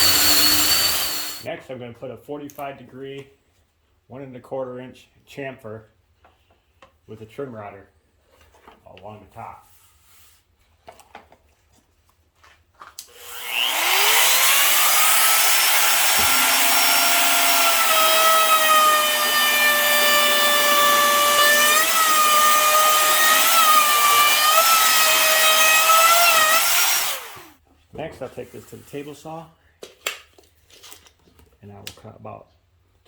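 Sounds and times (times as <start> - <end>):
trim router whining: 0.0 - 1.5, 13.1 - 27.5.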